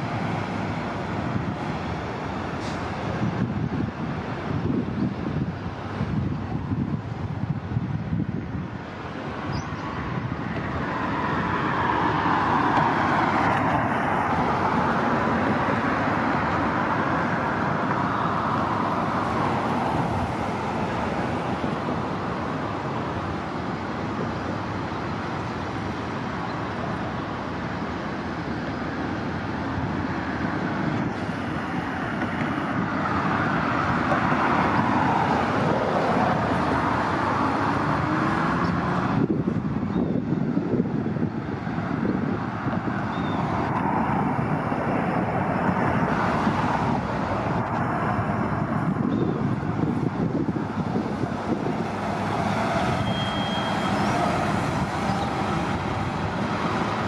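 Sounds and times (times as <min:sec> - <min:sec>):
buses driving past: 0:00.0 - 0:57.0
traffic rumble: 0:00.0 - 0:57.0.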